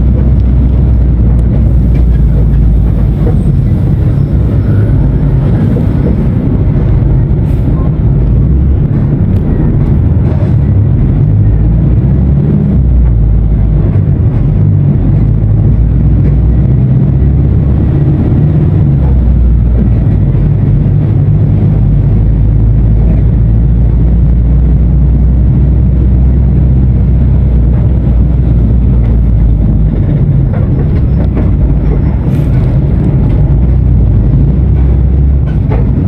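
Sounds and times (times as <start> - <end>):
diesel bus engine running: 0.0 - 36.0.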